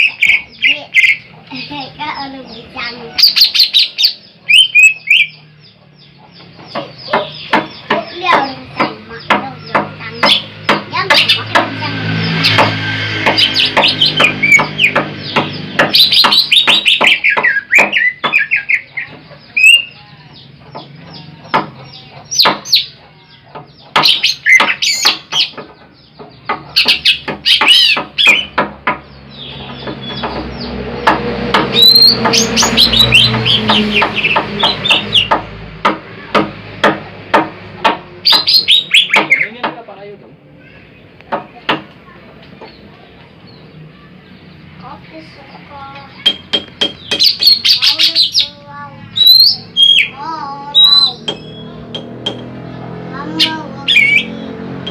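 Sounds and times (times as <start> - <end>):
bird chirping and whistling: 0.0 - 1.3, 3.2 - 5.8, 12.1 - 20.0, 24.0 - 25.6, 26.8 - 28.6, 31.7 - 35.4, 38.2 - 39.5, 46.2 - 52.4, 53.4 - 54.9.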